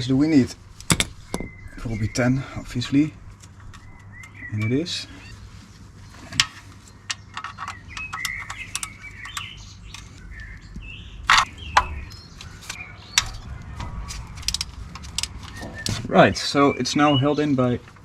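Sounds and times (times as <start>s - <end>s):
birds chirping: 7.2s - 13.6s
wrench clicking on bolts: 8.2s - 10.2s.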